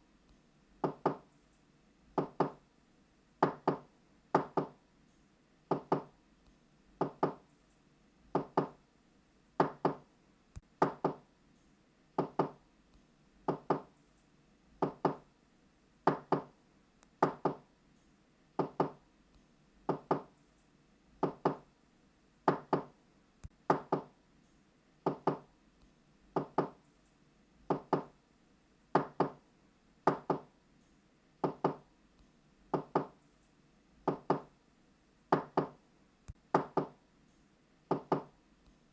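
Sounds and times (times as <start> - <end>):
knocking on a door: 0.8 - 1.2, 2.2 - 2.6, 3.4 - 4.8, 5.7 - 6.1, 7.0 - 7.4, 8.3 - 8.8, 9.6 - 10.0, 10.8 - 11.2, 12.2 - 12.6, 13.5 - 13.9, 14.8 - 15.2, 16.1 - 16.5, 17.2 - 17.6, 18.6 - 19.0, 19.9 - 20.3, 21.2 - 21.6, 22.5 - 22.9, 23.7 - 24.1, 25.0 - 25.5, 26.4 - 26.8, 27.7 - 28.1, 29.0 - 29.4, 30.1 - 30.5, 31.4 - 31.8, 32.7 - 33.2, 34.1 - 34.5, 35.3 - 35.8, 36.5 - 37.0, 37.9 - 38.3.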